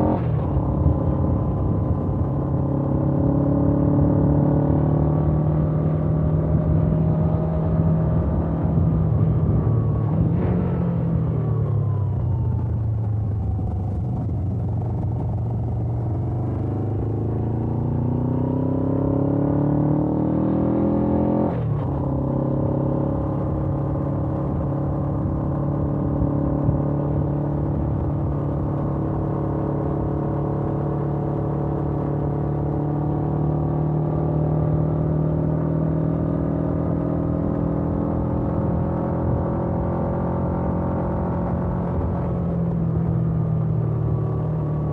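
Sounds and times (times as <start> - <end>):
motorcycle engine revving: 14.9 - 44.9.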